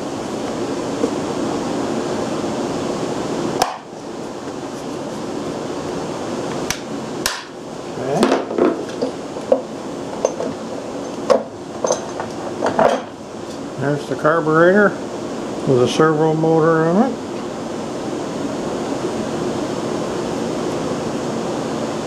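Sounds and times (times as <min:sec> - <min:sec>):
steady hum: 0:00.0 - 0:22.0
metal parts knocking and clinking: 0:08.2 - 0:13.6.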